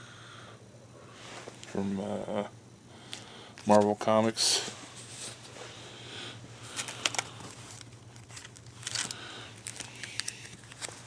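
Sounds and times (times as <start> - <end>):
steady low hum: 0.0 - 11.0
comic books rustling: 6.6 - 11.0.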